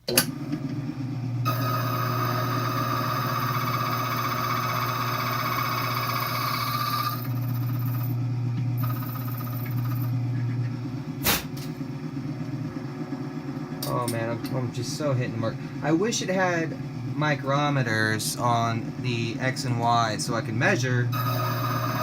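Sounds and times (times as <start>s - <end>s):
machine motor hum: 0.0s - 22.0s
cutter whining: 1.4s - 8.2s, 21.0s - 22.0s.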